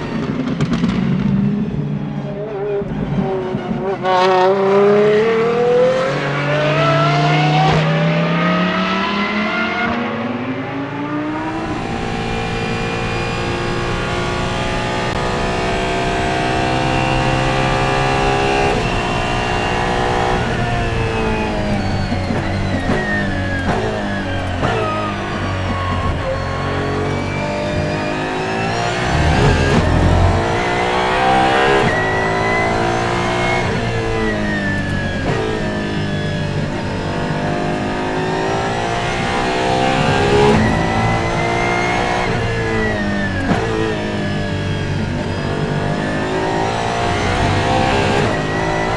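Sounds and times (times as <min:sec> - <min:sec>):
sports car engine accelerating: 0:00.0 - 0:48.9.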